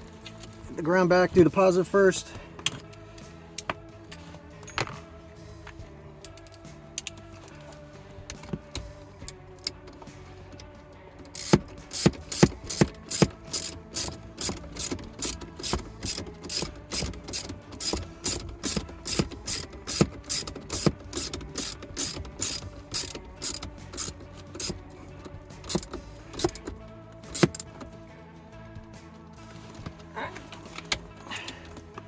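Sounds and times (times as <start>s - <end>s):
ratchet wrench clicking: 11.2s - 27.9s.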